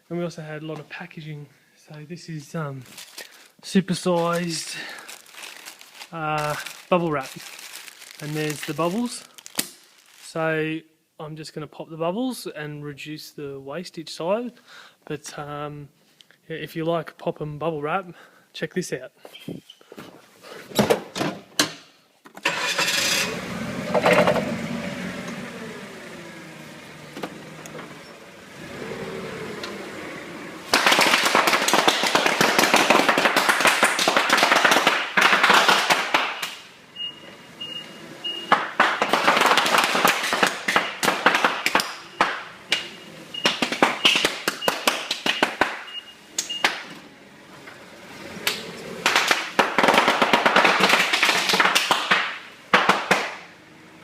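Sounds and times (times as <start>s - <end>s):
bubble wrap popping: 2.8s - 10.3s, 30.7s - 36.6s, 38.5s - 42.4s, 43.4s - 45.8s, 49.0s - 52.2s
forklift engine running: 22.5s - 30.8s.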